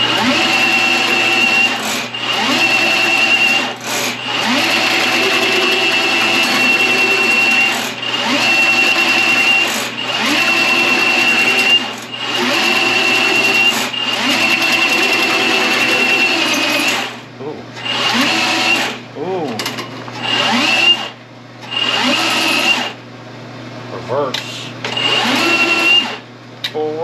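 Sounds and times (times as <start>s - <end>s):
drain machine motor spinning: 0.0s - 23.0s, 24.8s - 26.2s.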